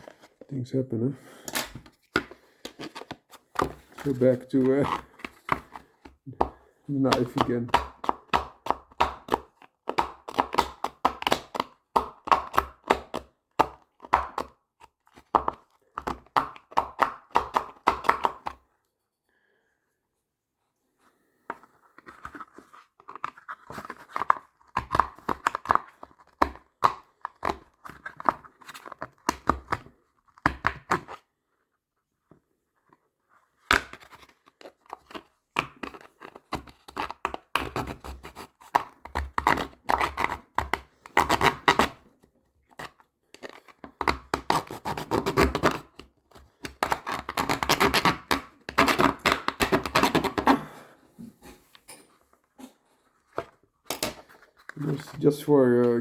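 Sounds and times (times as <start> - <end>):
knife scraping plastic case: 0.0 - 0.5, 1.4 - 6.5, 21.5 - 29.9, 42.7 - 50.6.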